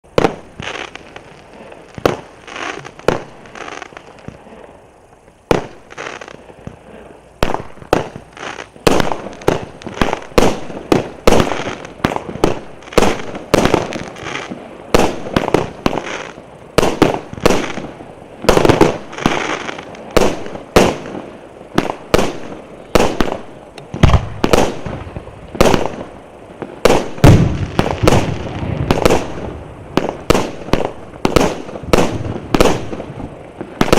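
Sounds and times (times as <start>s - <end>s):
fireworks battery shot bangs: 7.4s - 33.9s.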